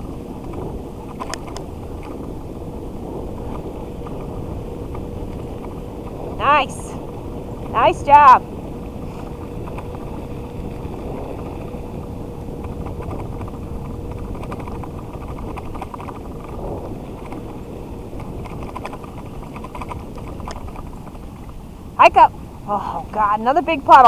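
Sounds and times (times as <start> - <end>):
scooter wheels rolling rumble: 0.0 - 24.0
wind on microphone: 0.0 - 24.0
light ticks and clicks: 0.4 - 2.3.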